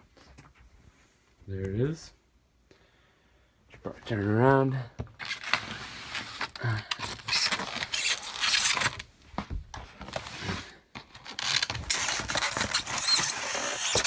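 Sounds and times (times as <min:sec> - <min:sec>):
packaging scraping and rustling: 0:05.2 - 0:09.1, 0:09.9 - 0:14.0.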